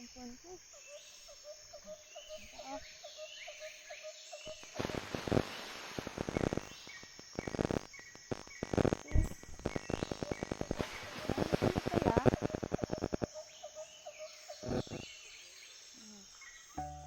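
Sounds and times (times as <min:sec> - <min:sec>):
short repeated calls: 0:07.4 - 0:15.0.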